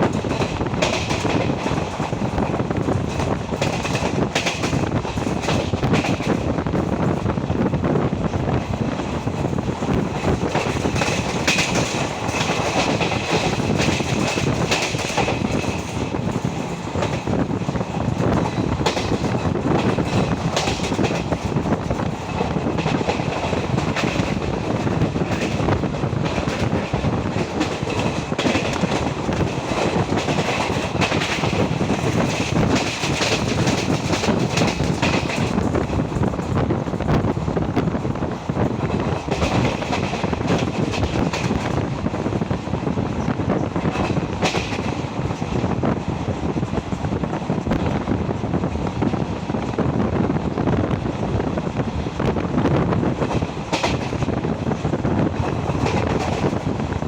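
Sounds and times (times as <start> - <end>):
train wheels rumbling on rails: 0.0 - 57.0.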